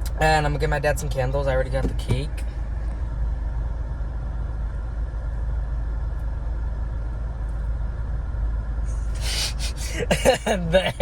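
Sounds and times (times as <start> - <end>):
car cabin rumble: 0.0 - 11.0.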